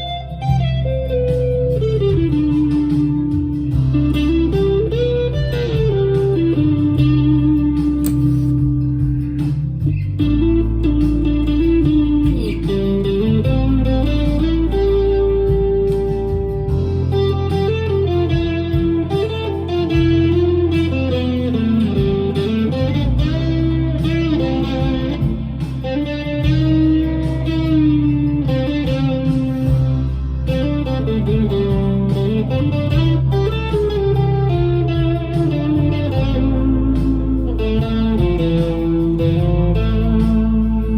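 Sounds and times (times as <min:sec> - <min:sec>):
backing track with bass line: 0:00.0 - 0:40.9
electric guitar lead melody: 0:00.0 - 0:40.9.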